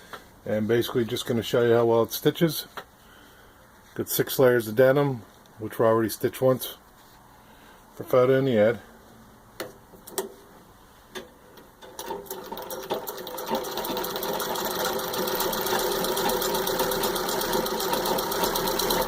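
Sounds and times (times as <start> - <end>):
sewing machine clicks: 11.8 - 19.0
treadle sewing machine stitching: 11.8 - 19.0.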